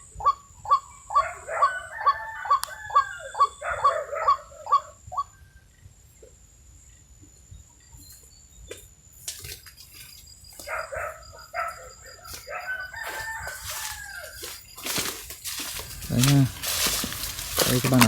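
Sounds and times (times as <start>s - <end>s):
bird giving harsh calls: 15.6s - 18.0s.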